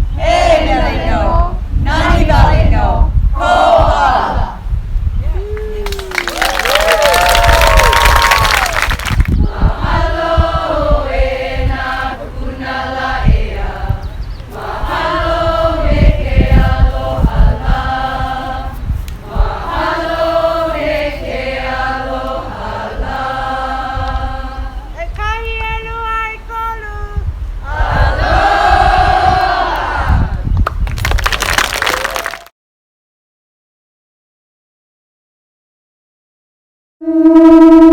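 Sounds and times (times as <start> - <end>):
group chanting in unison: 0.0 - 4.7, 9.4 - 25.0, 27.6 - 30.5.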